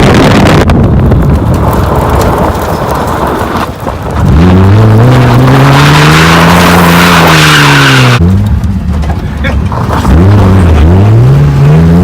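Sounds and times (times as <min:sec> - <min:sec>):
tyres skidding: 0:00.0 - 0:12.0
car engine revving hard: 0:04.2 - 0:08.4, 0:10.0 - 0:12.0.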